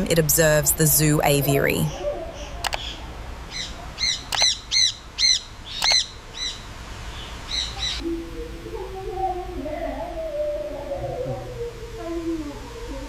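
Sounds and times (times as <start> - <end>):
bird chirping: 1.5 - 8.0
sharp clicks: 2.6 - 3.0, 4.3 - 4.6, 5.8 - 6.1.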